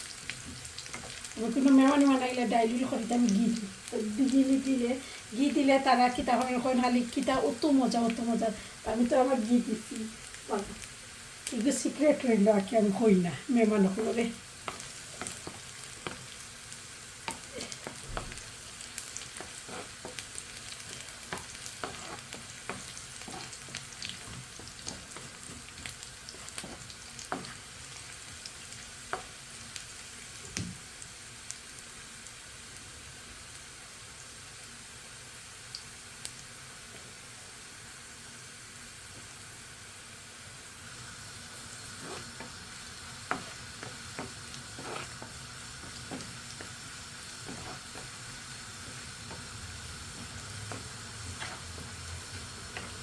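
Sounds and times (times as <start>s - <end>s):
spices frying in hot fat: 0.0s - 53.0s
spoon scraping a pan: 14.0s - 16.4s, 18.9s - 27.6s, 41.9s - 42.6s, 43.2s - 53.0s.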